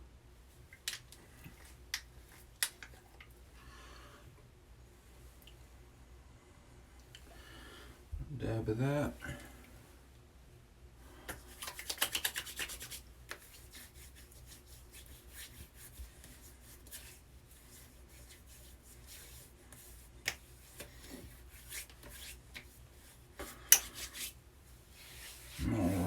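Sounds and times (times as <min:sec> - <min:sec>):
hands rubbing balm into skin: 0:11.3 - 0:26.0.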